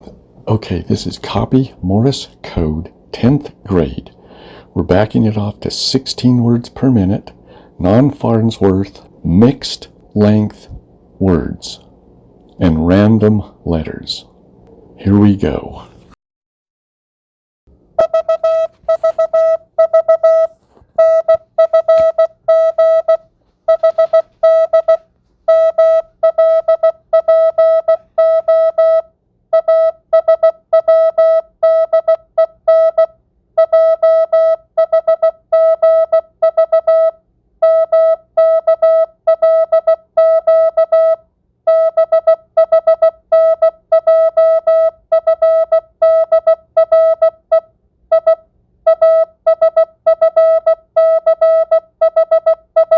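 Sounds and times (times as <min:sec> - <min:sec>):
morse code beeps: 0:18.0 - 0:52.9.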